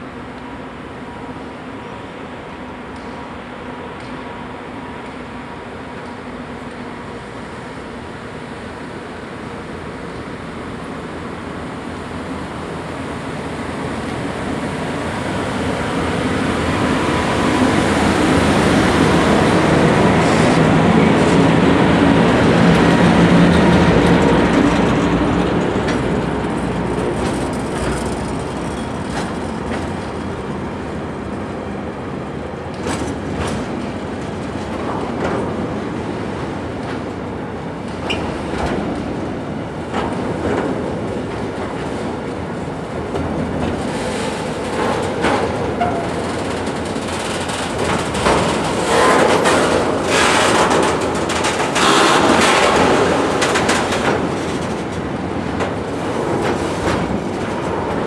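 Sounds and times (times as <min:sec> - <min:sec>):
freight train passing: 0:00.0 - 0:58.0.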